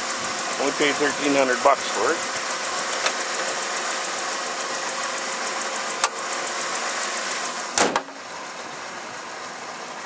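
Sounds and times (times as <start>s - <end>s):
car engine idling: 0.0s - 10.0s
loud thump: 7.8s - 8.2s.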